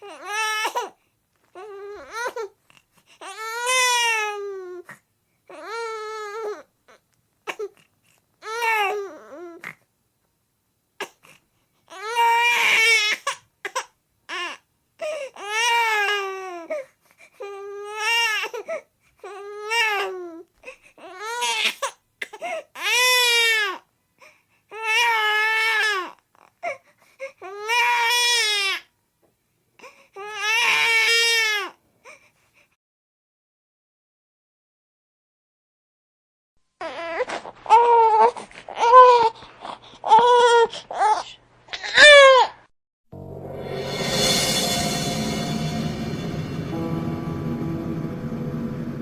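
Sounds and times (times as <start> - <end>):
baby crying: 0.0 - 1.0, 11.9 - 16.8, 30.2 - 31.8, 40.0 - 42.5.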